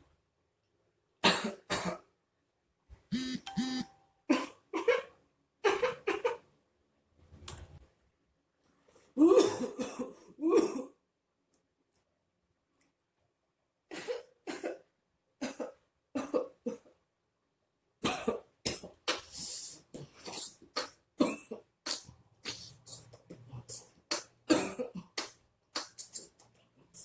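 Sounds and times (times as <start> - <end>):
person coughing: 9.2 - 11.0, 24.5 - 25.2.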